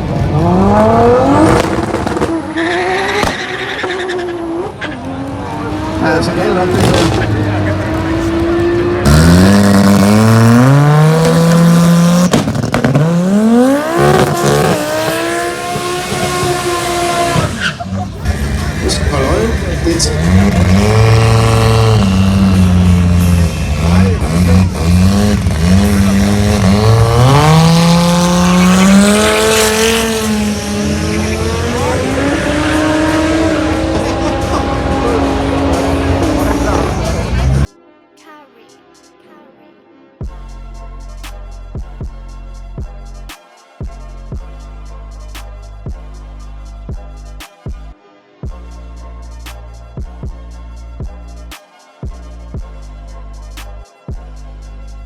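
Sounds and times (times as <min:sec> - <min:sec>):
race car engine accelerating: 0:00.0 - 0:37.7.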